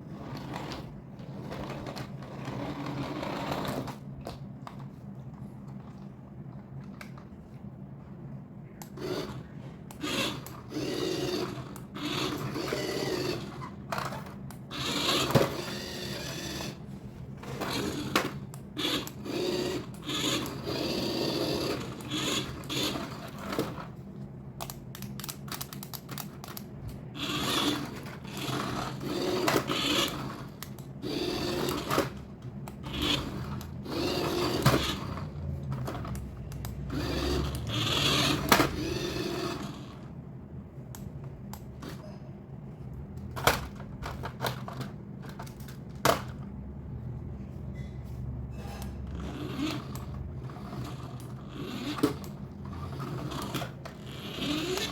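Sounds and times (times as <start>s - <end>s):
steady low hum: 0.0s - 54.9s
toy motor and gears whirring: 8.8s - 24.0s, 25.0s - 40.1s, 48.5s - 54.9s.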